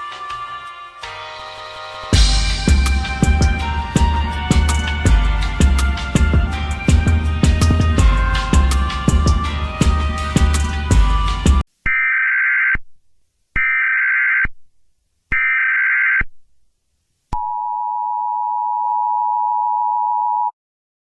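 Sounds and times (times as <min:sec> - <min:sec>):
music: 0:00.0 - 0:11.6.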